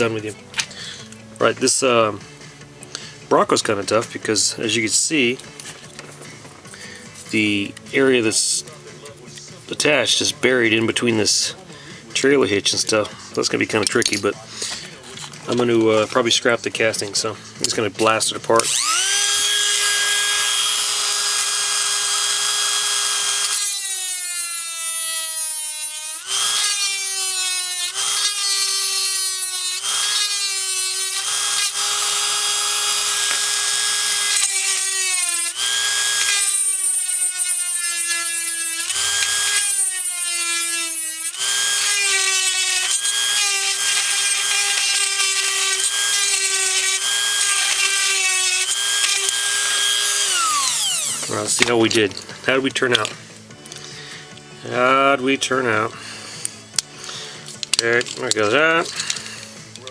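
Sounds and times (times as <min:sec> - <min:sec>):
electric drill drilling metal: 0:18.0 - 0:54.4, 0:56.4 - 0:59.8.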